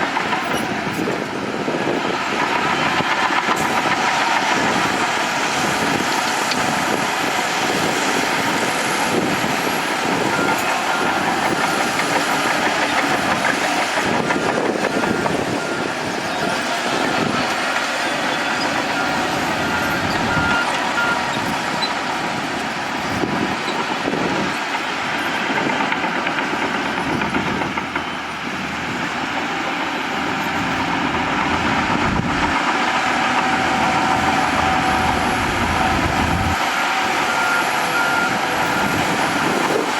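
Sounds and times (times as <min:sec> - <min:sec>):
bulldozer working: 0:00.0 - 0:39.9
reversing alarm beeping: 0:10.1 - 0:22.0, 0:26.0 - 0:32.6, 0:33.3 - 0:39.9.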